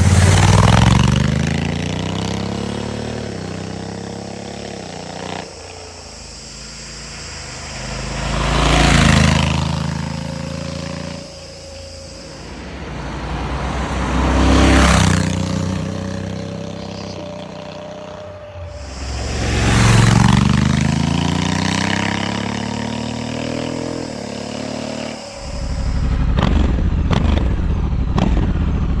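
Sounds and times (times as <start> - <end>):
motorcycle engine accelerating past: 0.0 - 29.0
rough rumble with sharp knocks: 25.6 - 29.0.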